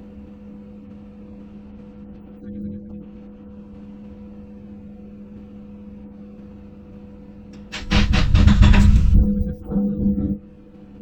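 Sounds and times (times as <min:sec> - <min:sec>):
rough burst of machine noise: 0:07.6 - 0:09.9.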